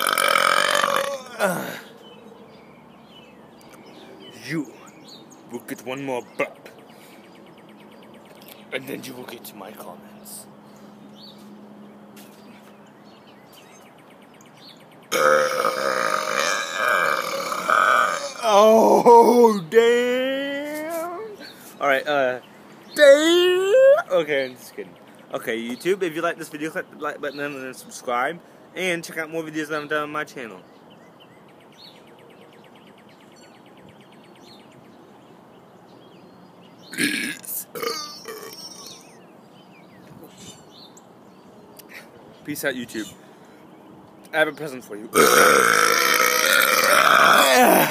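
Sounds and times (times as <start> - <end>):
man burping loudly: 0.0 - 1.9, 15.1 - 19.6, 36.9 - 39.2, 45.1 - 47.9
birds chirping faintly: 0.0 - 47.9.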